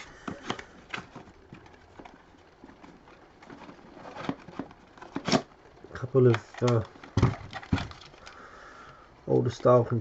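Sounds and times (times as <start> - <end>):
toy parts knocking and clicking: 6.2 - 8.3.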